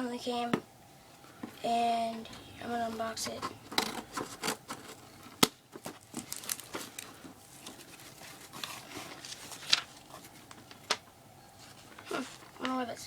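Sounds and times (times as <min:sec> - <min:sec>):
packaging crinkling and tearing: 0:04.1 - 0:11.0.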